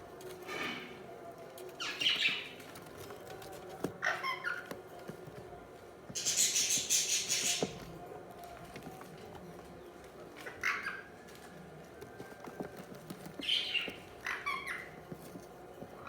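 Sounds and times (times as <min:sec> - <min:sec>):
budgies chirping: 0:01.8 - 0:02.8, 0:06.2 - 0:07.8, 0:13.4 - 0:15.0.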